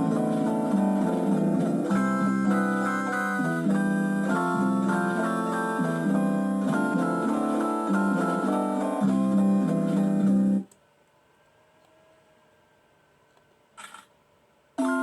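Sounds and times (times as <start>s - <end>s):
guitar-like plucked chords: 0.0s - 10.7s.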